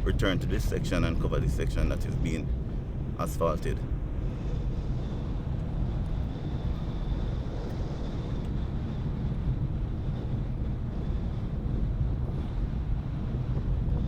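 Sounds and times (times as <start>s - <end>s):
car driving rumble: 0.0s - 14.0s
wind buffeting microphone: 0.0s - 14.0s.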